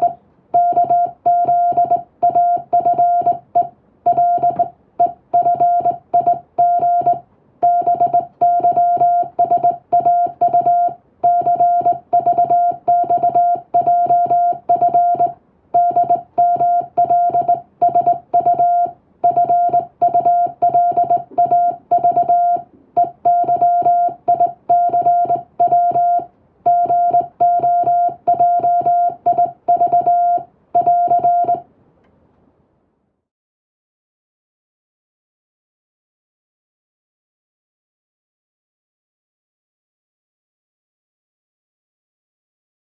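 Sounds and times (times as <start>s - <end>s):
morse code beeps: 0.0s - 31.6s.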